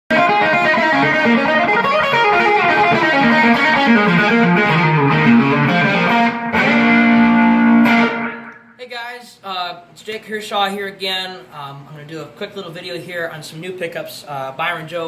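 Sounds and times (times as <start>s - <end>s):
electric guitar playing: 0.1s - 8.8s.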